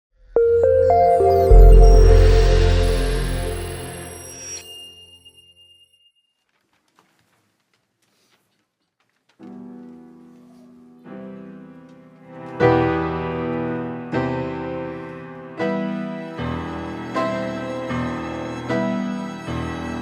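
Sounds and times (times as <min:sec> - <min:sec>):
sustained piano chords: 0:00.4 - 0:04.9.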